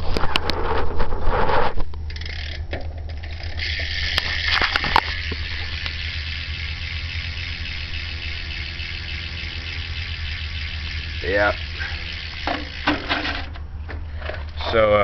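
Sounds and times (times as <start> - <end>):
steady low hum: 0.0 - 15.0
bicycle hub ticking: 2.0 - 13.6.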